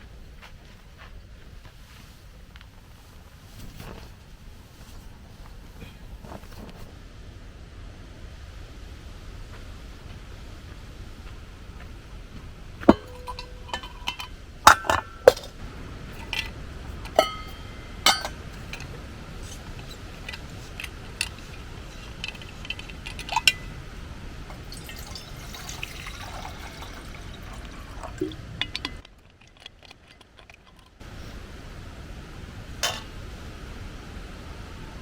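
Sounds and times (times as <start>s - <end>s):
cup and utensils clinking: 12.8s - 23.8s, 24.5s - 31.0s, 32.8s - 33.2s
liquid pouring: 24.5s - 30.6s.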